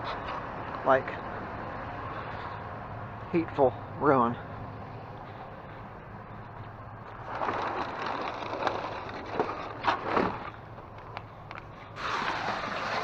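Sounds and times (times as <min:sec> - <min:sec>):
recyclables rustling and clattering: 0:06.6 - 0:13.0.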